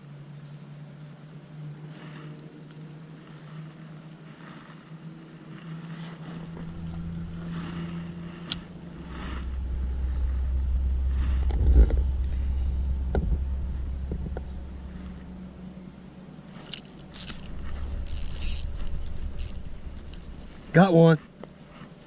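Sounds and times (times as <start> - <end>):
low engine rumble: 0.0 - 22.0.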